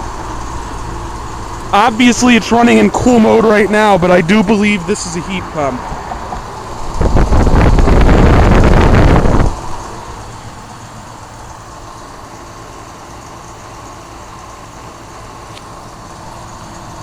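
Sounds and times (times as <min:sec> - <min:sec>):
heat pump unit humming: 0:00.0 - 0:17.0
loud rushing noise: 0:05.0 - 0:09.9.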